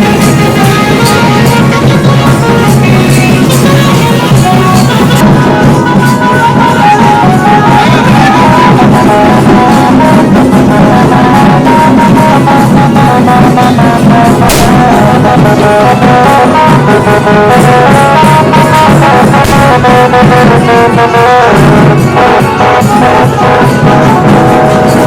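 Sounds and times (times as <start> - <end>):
brass melody: 0.0 - 25.0
fast dense drumming: 0.0 - 25.0
sharp bang: 12.8 - 15.8, 18.6 - 21.2.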